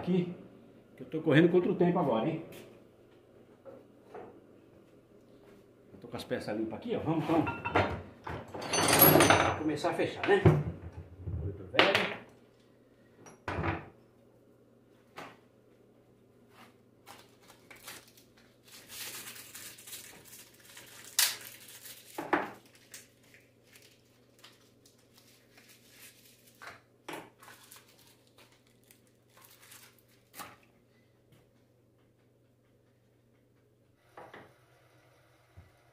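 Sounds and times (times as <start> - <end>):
faint steady hum: 0.0 - 35.9
metal clinks and knocks: 8.3 - 9.7.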